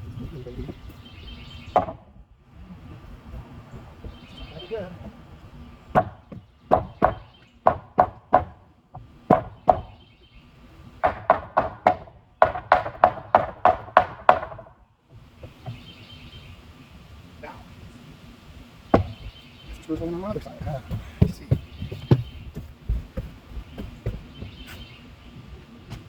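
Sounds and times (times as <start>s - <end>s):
hammer striking nails in wood: 5.9s - 10.0s, 11.0s - 14.8s.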